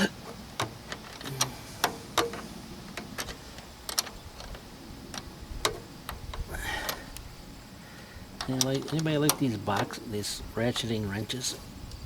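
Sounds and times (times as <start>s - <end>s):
hand tools tapping on metal: 0.0s - 4.6s, 8.4s - 10.1s.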